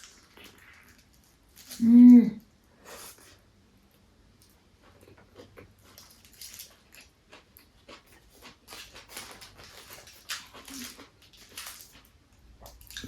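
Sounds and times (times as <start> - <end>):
person chewing food: 2.8 - 13.0.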